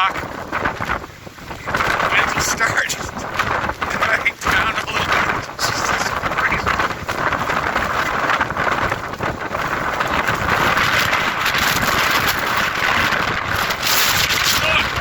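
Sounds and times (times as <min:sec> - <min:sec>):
strong wind on microphone: 0:00.0 - 0:15.0.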